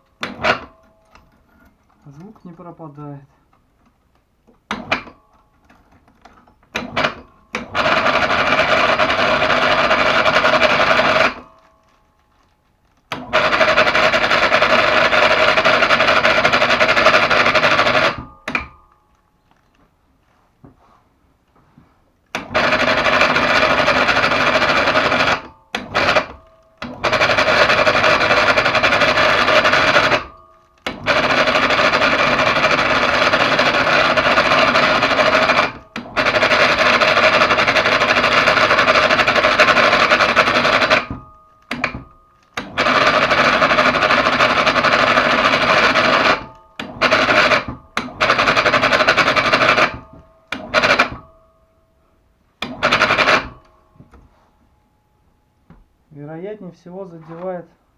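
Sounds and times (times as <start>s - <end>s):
electric hoist motor running: 6.7s - 11.9s, 12.9s - 18.8s, 22.3s - 51.5s, 52.6s - 53.8s.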